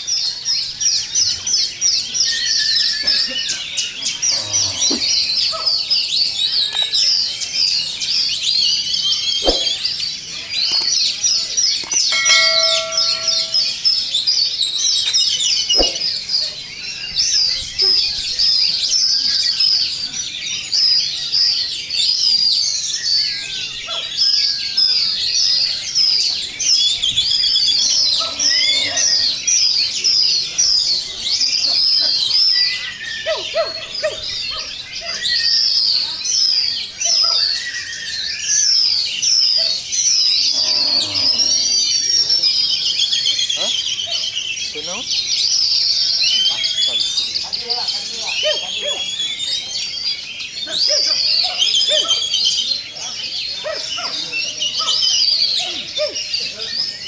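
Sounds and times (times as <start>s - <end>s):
chorus of songbirds singing: 0.0s - 57.0s
sharp knocks: 9.4s - 9.8s, 11.8s - 13.7s.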